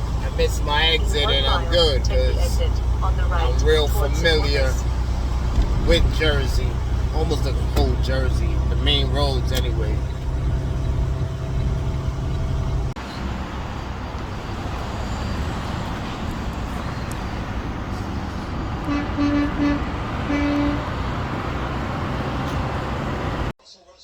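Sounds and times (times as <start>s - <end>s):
road noise: 0.0s - 23.6s
truck diesel engine drone: 0.0s - 23.6s
vehicle horn toots: 18.8s - 21.1s.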